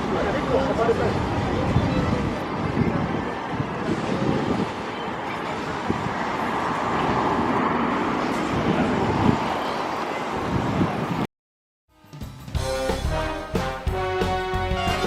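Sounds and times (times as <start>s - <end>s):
city street traffic: 0.0s - 11.3s, 12.5s - 15.0s
music with brass: 11.9s - 15.0s.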